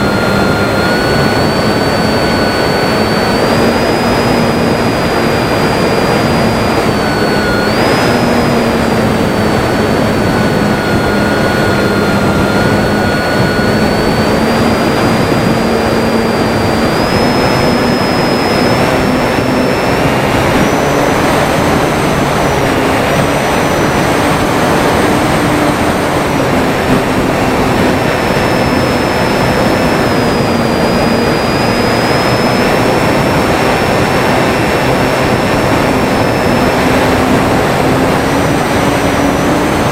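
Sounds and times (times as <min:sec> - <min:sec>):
rc plane motor whine: 0:00.0 - 0:39.9
wind noise: 0:00.0 - 0:39.9.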